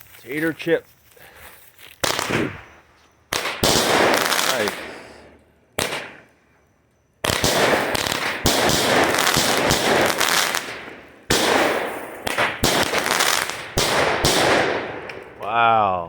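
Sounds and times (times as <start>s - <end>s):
firework cake bangs: 2.0s - 5.2s, 5.8s - 6.3s, 7.2s - 15.4s.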